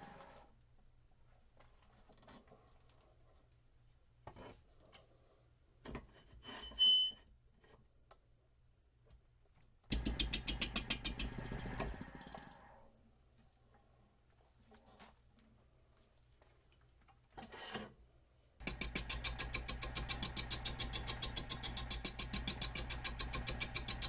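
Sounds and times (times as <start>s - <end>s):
wood lathe gouge knocking: 9.9s - 12.2s, 18.6s - 24.0s.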